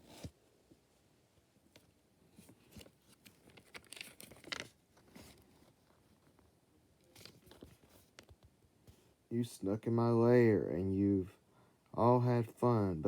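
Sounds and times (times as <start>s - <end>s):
paper page rustling: 2.3s - 6.5s, 7.1s - 8.5s.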